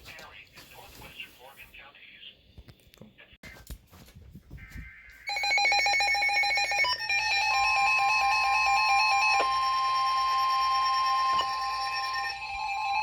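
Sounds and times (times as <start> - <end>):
steady alarm tone: 4.6 - 13.0
rapid electronic alarm beeping: 4.8 - 13.0.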